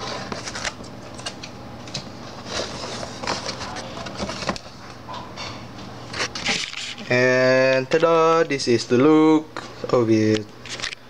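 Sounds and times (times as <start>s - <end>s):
packaging rustling: 0.0s - 1.4s, 2.3s - 4.8s.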